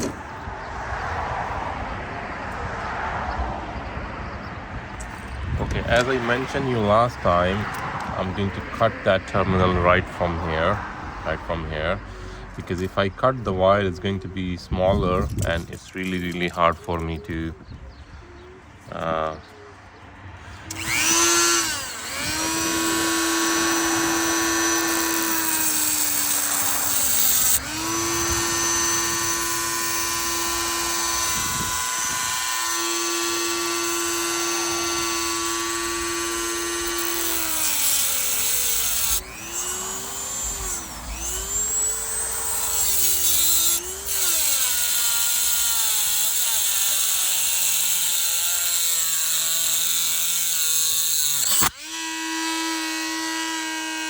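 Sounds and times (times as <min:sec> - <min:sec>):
rotary tool cutting metal: 0:00.0 - 0:00.2, 0:05.0 - 0:10.7, 0:15.0 - 0:17.5, 0:20.6 - 0:54.0.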